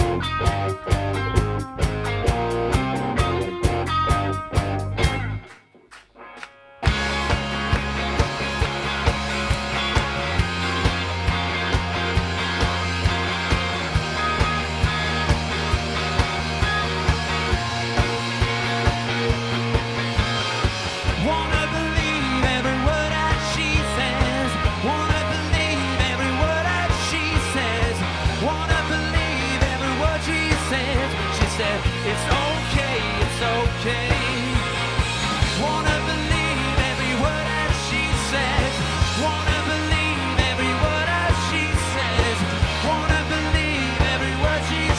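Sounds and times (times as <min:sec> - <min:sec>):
steady drum beat: 0:00.0 - 0:06.2, 0:06.8 - 0:44.9
rock band playing live: 0:00.0 - 0:44.9.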